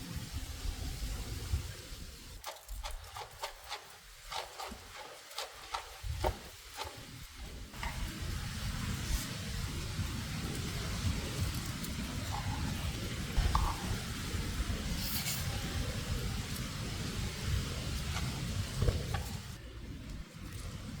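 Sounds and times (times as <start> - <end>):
fire hissing: 4.0 - 19.7.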